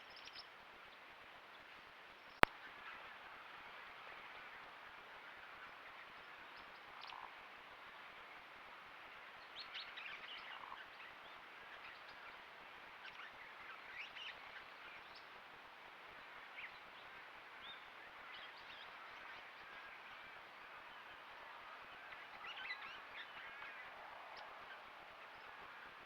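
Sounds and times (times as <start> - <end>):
faint steady hiss: 0.0 - 26.0
birds chirping: 16.2 - 26.0.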